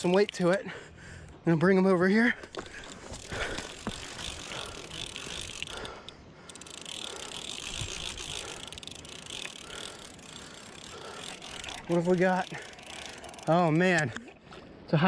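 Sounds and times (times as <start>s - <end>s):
fishing reel ratcheting whir: 2.5s - 14.4s.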